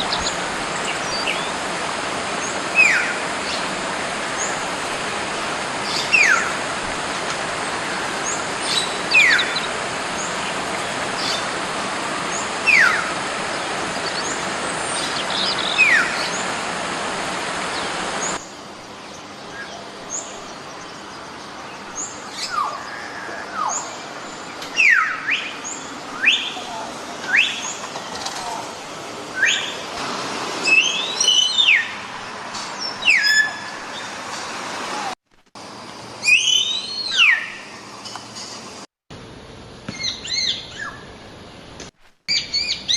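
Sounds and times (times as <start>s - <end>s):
steady rushing hiss: 0.0s - 40.4s
myna bird whistling: 8.7s - 9.7s, 15.1s - 16.4s, 24.7s - 26.6s, 27.2s - 27.8s, 29.4s - 29.8s, 30.6s - 32.0s, 32.8s - 33.7s, 36.2s - 37.7s, 39.9s - 41.0s, 42.3s - 42.9s.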